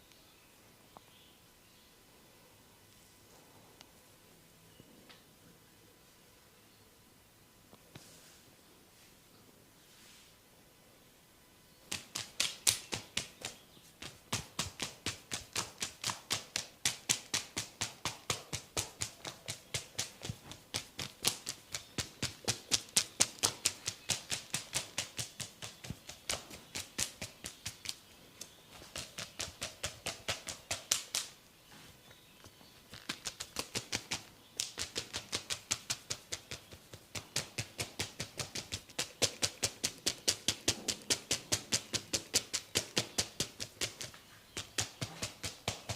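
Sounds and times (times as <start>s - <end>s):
hands tapping on head: 11.9s - 31.3s, 32.9s - 45.9s.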